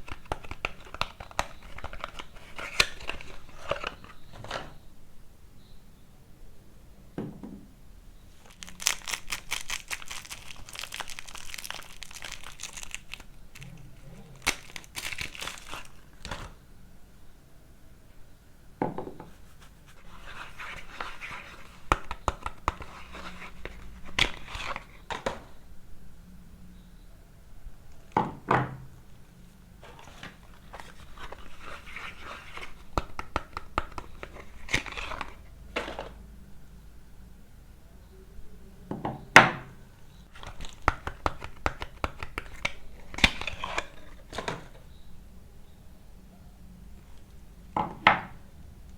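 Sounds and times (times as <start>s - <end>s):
wrapper crinkling and tearing: 8.4s - 16.6s, 40.3s - 44.2s.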